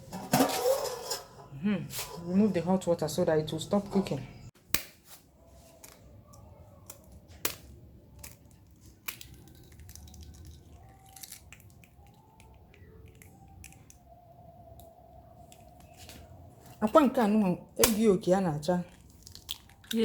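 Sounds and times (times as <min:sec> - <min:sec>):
cooking pot and utensils clinking: 0:00.0 - 0:02.8.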